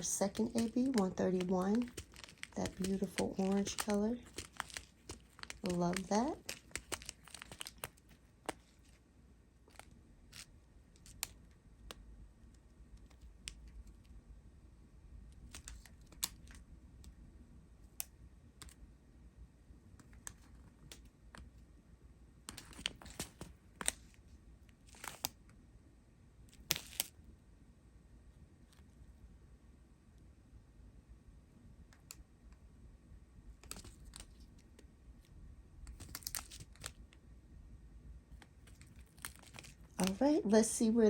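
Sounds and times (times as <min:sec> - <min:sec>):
plastic bags rustling and clicking: 0:00.0 - 0:09.0, 0:38.6 - 0:40.7.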